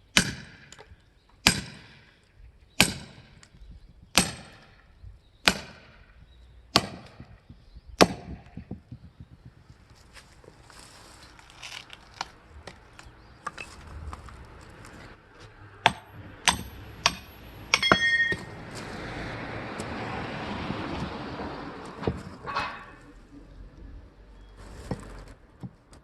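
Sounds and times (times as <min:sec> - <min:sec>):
rustling: 0:08.8 - 0:15.6
metal striking metal: 0:15.8 - 0:18.6
ringing metal clinks: 0:16.6 - 0:18.5.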